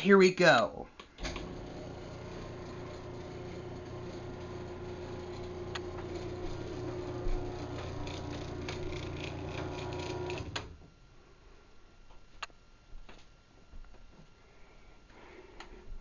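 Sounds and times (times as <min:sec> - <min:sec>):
garage door opener click: 0:01.0 - 0:10.8
garage door opener humming: 0:01.0 - 0:10.9.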